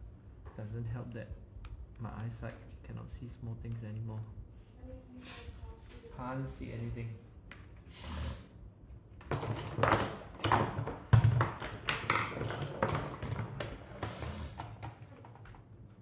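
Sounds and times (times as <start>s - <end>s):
small tool parts clattering: 9.2s - 14.4s.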